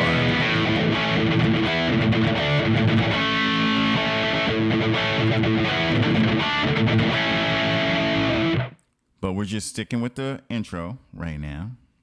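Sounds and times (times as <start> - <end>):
electric guitar chords ringing: 0.0 - 8.8.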